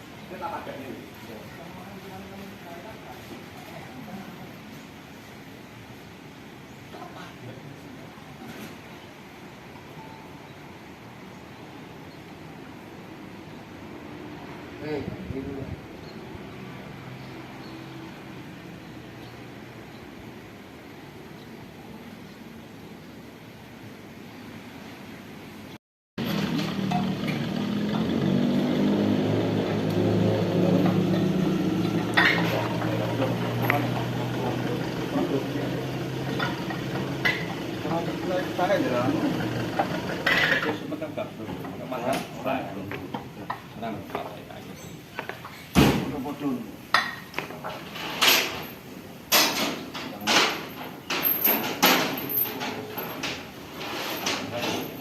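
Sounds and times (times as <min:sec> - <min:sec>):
sharp knocks and clangs: 0:26.2 - 0:28.4, 0:30.7 - 0:35.4, 0:36.1 - 0:37.8, 0:46.9 - 0:55.0
engine running: 0:26.2 - 0:40.6.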